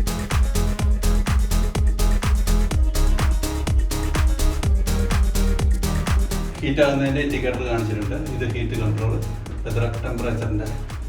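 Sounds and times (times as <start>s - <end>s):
electronic dance music: 0.0s - 11.0s.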